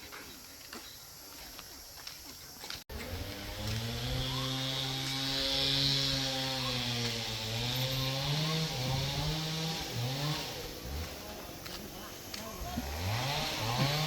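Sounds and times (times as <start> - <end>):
small engine revving: 2.9 - 11.5, 12.3 - 14.0.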